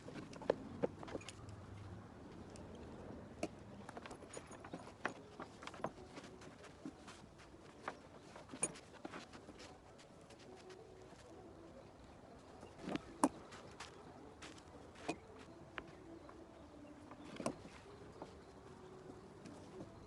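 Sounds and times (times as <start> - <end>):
metal buckles clicking and knocking: 3.4 - 9.7.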